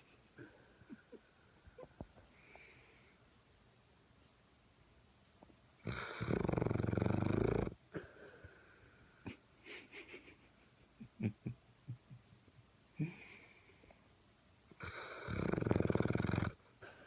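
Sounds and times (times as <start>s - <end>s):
dog snoring: 5.8s - 8.1s, 14.8s - 17.0s.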